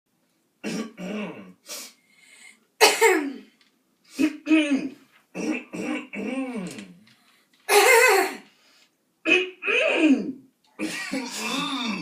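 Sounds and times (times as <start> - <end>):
cartoon coughing: 7.7 - 8.4, 9.2 - 12.0.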